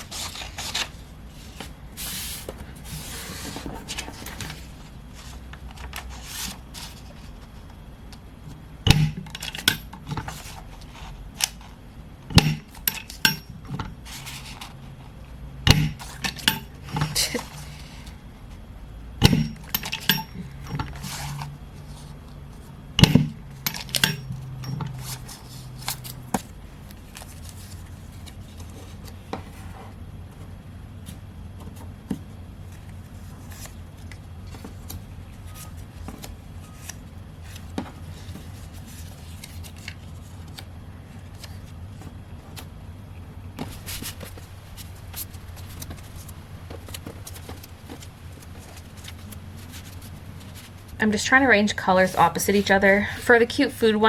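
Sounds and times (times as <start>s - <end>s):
steady low hum: 0.0s - 54.0s
metal buttons clinking: 19.2s - 21.0s, 23.0s - 25.0s.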